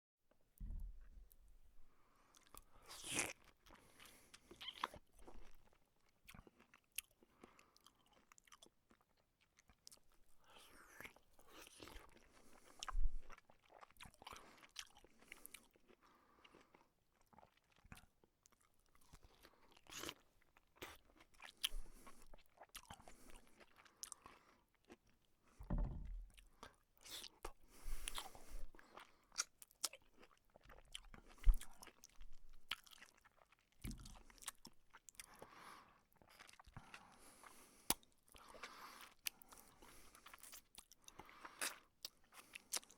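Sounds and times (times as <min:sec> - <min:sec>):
crunching bites of fruit: 0:02.4 - 0:05.4
wet chewing: 0:26.3 - 0:42.9.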